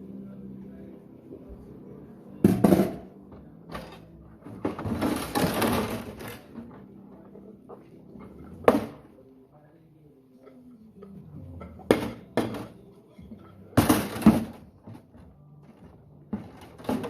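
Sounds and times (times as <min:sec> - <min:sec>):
dishes clattering: 0:02.5 - 0:09.0, 0:10.5 - 0:17.0.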